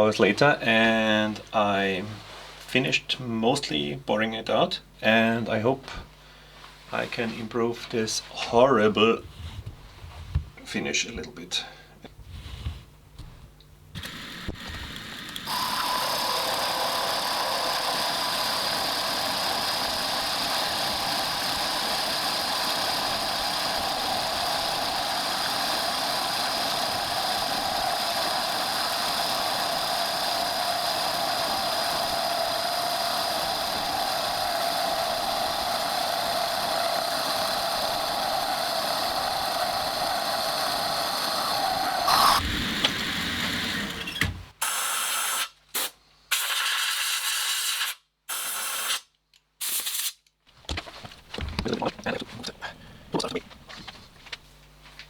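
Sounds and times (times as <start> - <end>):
high whine of cutting: 14.0 - 44.4
metal lathe running: 15.4 - 44.1.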